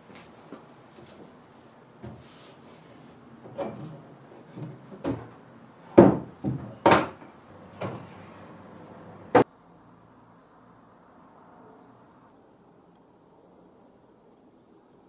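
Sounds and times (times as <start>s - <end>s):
wooden chest knocks and clunks: 4.5s - 5.4s, 6.0s - 8.2s.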